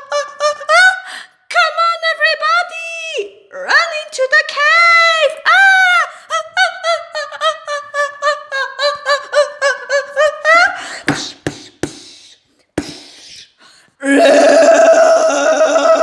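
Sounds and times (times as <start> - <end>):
sharp knocks: 11.1 - 12.1, 12.8 - 13.1
rising cry: 14.0 - 16.0.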